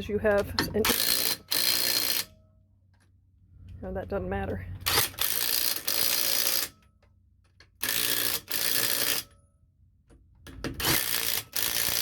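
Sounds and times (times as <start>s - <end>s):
ratchet wrench clicking: 10.8s - 12.0s.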